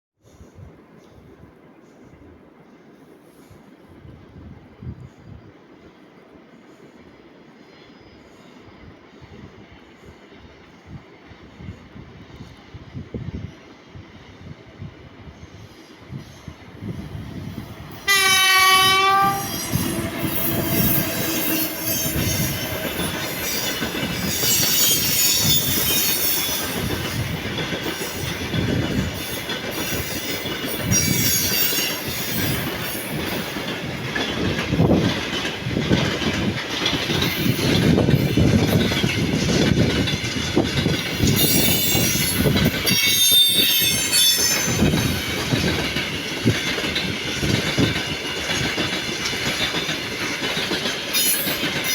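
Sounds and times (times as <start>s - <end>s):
locomotive horn: 18.1s - 22.3s
wheel squeal: 19.4s - 26.8s.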